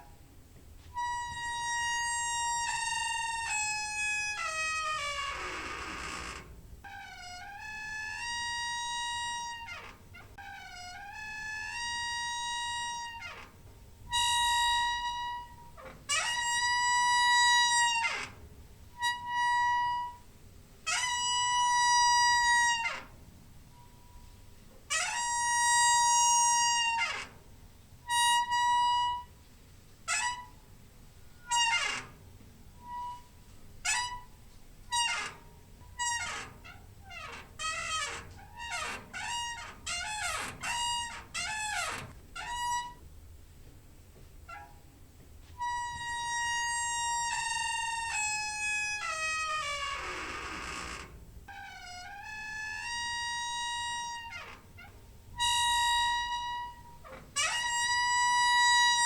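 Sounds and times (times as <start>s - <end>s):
door hinge squeaking: 0.9s - 20.3s, 20.9s - 27.4s, 28.0s - 29.4s, 30.0s - 43.1s, 44.4s - 44.9s, 45.6s - 59.0s.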